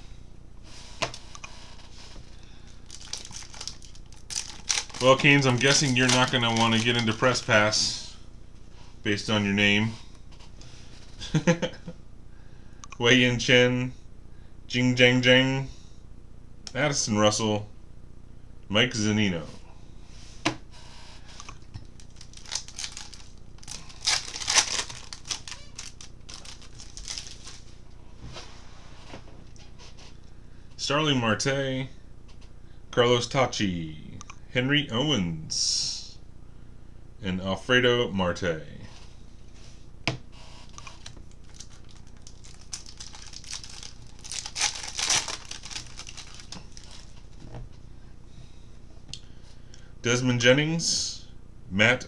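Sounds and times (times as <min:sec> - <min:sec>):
plastic wrapper crinkling: 0:02.3 - 0:08.0, 0:21.4 - 0:27.8, 0:40.7 - 0:47.4.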